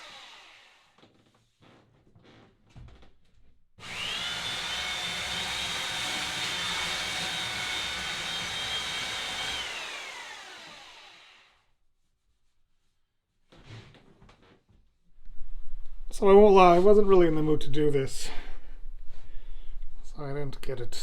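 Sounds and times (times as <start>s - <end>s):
electric motor whining: 0.0s - 0.8s, 3.8s - 11.4s.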